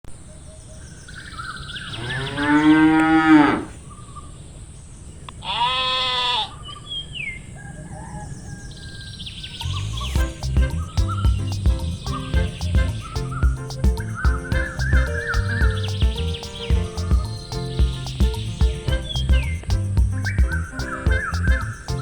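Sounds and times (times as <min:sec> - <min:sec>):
cow mooing: 0:02.0 - 0:03.7
music: 0:10.2 - 0:22.0.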